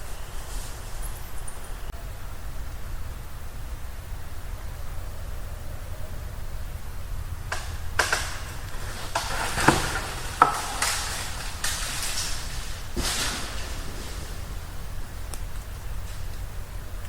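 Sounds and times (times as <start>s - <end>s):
low rumble: 1.7s - 9.3s, 10.0s - 17.0s
sharp cracks and snaps: 7.5s - 17.0s.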